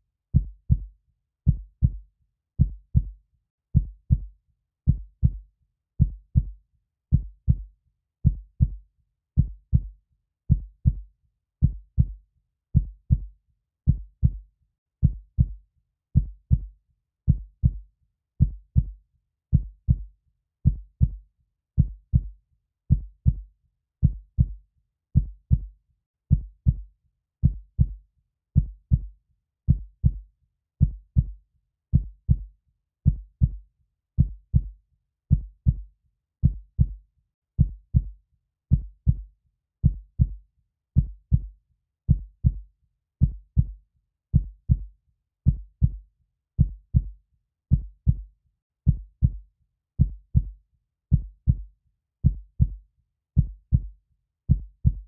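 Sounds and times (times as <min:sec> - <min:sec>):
heartbeat: 0:00.4 - 0:00.9, 0:01.5 - 0:02.0, 0:02.6 - 0:03.2, 0:03.8 - 0:04.3, 0:04.9 - 0:05.4, 0:06.0 - 0:08.8, 0:09.4 - 0:09.9, 0:10.5 - 0:11.0, 0:11.6 - 0:12.2, 0:12.8 - 0:13.3, 0:13.9 - 0:14.4, 0:15.0 - 0:15.6, 0:16.2 - 0:16.7, 0:17.3 - 0:17.8, 0:18.4 - 0:20.1, 0:20.7 - 0:21.2, 0:21.8 - 0:22.3, 0:22.9 - 0:24.6, 0:25.2 - 0:25.7, 0:26.3 - 0:28.0, 0:28.6 - 0:29.1, 0:29.7 - 0:30.2, 0:30.8 - 0:31.4, 0:32.0 - 0:32.5, 0:33.1 - 0:33.6, 0:34.2 - 0:37.0, 0:37.6 - 0:40.4, 0:41.0 - 0:41.5, 0:42.1 - 0:42.6, 0:43.2 - 0:43.8, 0:44.4 - 0:44.9, 0:45.5 - 0:46.0, 0:46.6 - 0:48.3, 0:48.9 - 0:49.4, 0:50.0 - 0:52.8, 0:53.4 - 0:53.9, 0:54.5 - 0:55.0.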